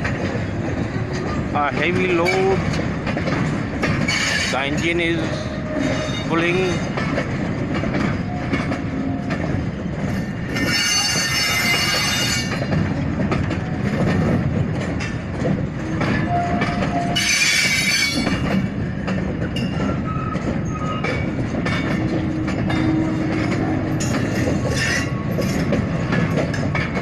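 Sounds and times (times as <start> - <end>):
freight wagons rolling on rails: 0.0 - 27.0
wheels squealing against rails: 4.0 - 7.0, 8.0 - 9.5, 10.2 - 12.8, 15.8 - 18.6, 19.4 - 26.9.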